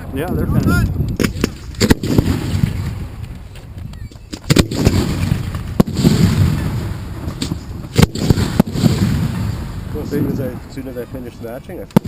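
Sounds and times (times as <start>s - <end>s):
firework bangs: 1.2s - 3.3s, 4.4s - 10.4s.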